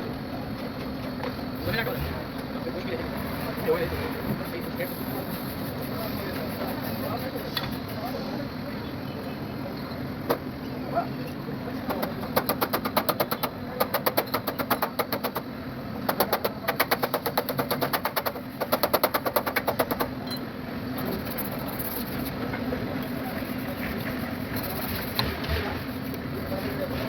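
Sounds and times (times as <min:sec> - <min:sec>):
rapid sharp taps: 0:11.9 - 0:20.1.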